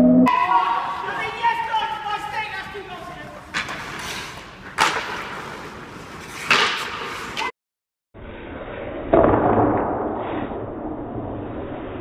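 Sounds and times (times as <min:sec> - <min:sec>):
hockey stick hitting puck: 0:03.5 - 0:07.5, 0:09.0 - 0:10.9.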